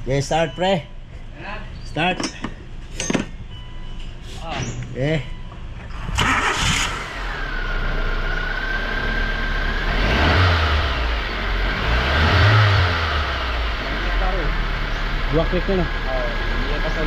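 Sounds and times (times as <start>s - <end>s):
car engine starting and revving: 5.9s - 17.0s.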